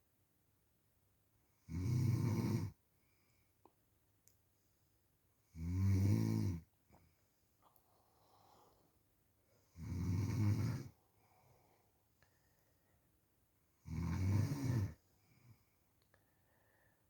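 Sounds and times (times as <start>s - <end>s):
loud snoring: 1.7s - 2.8s, 5.5s - 6.6s, 9.8s - 11.0s, 13.8s - 15.0s
faint breathing: 7.0s - 9.6s, 10.9s - 13.2s, 15.1s - 17.0s.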